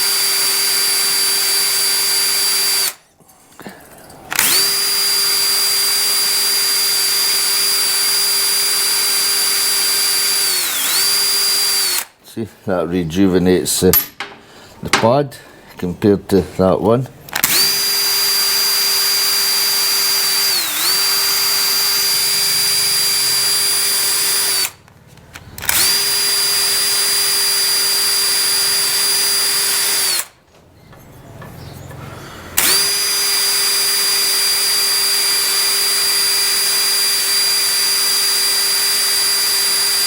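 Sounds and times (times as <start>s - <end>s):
electric drill wire brush whine: 0.0s - 3.0s, 4.3s - 12.1s, 17.4s - 24.8s, 25.6s - 30.4s, 32.6s - 40.0s.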